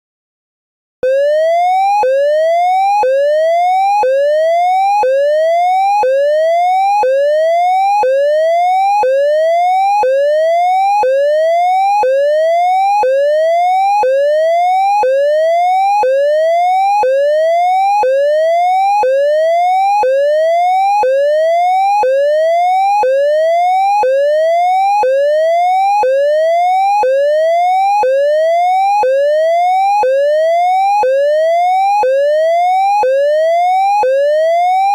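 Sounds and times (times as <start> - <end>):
rising electronic siren tone: 1.0 - 5.7.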